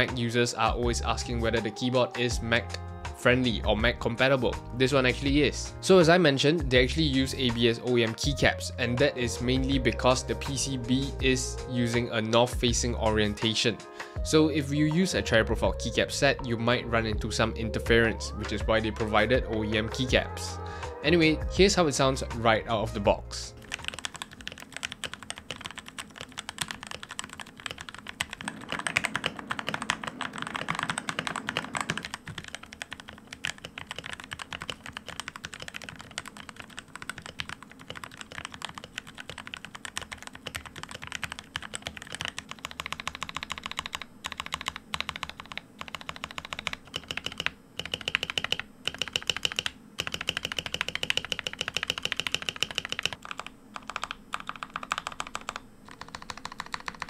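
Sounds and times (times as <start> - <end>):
fast keyboard typing clacks: 23.6 - 57.0.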